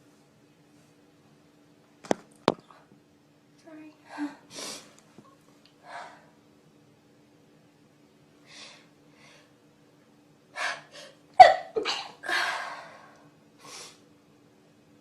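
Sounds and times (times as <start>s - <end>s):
person sneezing: 11.4s - 12.5s.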